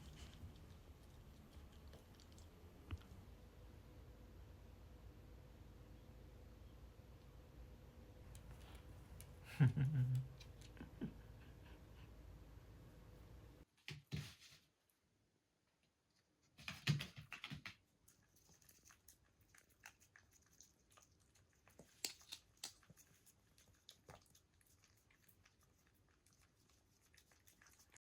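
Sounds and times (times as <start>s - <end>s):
dog chewing: 0.0s - 3.2s, 18.2s - 28.0s.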